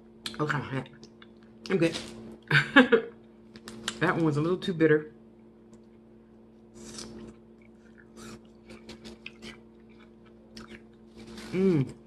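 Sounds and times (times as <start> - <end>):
chewing salad crunches: 6.8 - 12.0.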